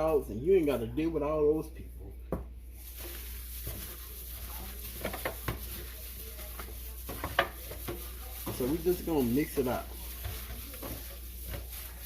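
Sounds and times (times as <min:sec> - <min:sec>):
wet squishing of chicken mixed by hand: 0:02.7 - 0:12.0.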